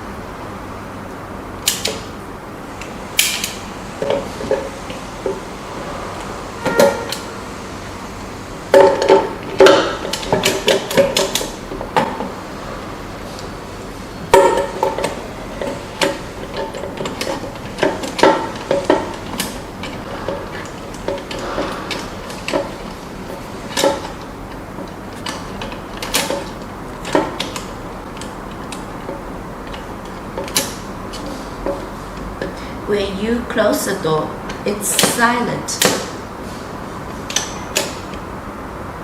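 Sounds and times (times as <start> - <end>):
lock parts clicking and knocking: 8.8 - 12.3, 14.3 - 32.6.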